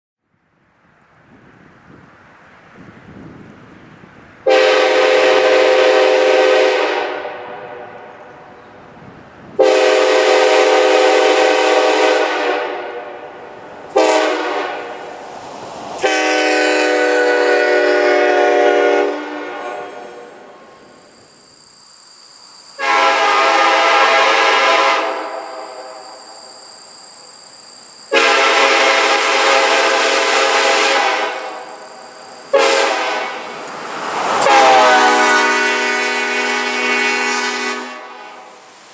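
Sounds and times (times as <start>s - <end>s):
locomotive air horn blasts: 4.4s - 8.2s, 9.6s - 15.1s, 16.0s - 20.6s, 22.8s - 26.1s, 28.1s - 31.8s, 32.4s - 38.6s
steady high whine: 20.3s - 35.2s, 38.0s - 38.9s.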